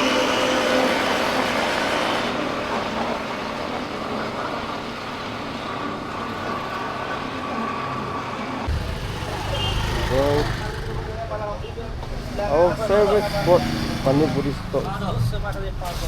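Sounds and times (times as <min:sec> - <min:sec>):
motorcycle engine running: 0:08.7 - 0:11.6.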